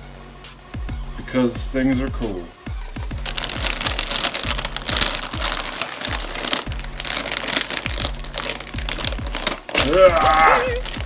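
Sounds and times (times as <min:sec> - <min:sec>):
electronic music with bass beat: 0:00.0 - 0:11.0
chip bag crinkling: 0:03.1 - 0:11.0.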